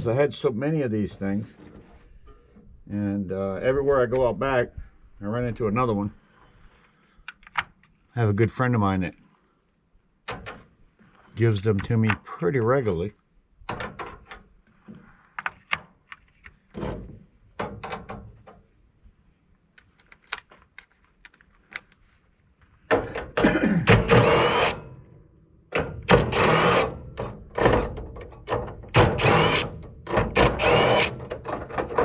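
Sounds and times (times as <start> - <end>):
power drill whining: 23.9 - 24.8, 26.2 - 27.0, 28.9 - 31.3.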